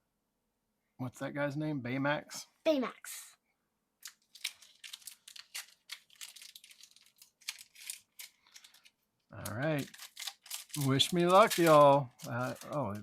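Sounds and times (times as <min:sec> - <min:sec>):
card packaging crinkling: 0:04.0 - 0:13.0.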